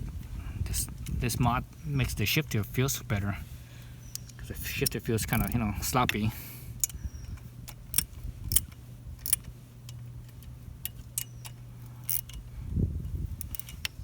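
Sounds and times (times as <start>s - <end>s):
hand tool clicking on bolts: 13.4s - 14.0s.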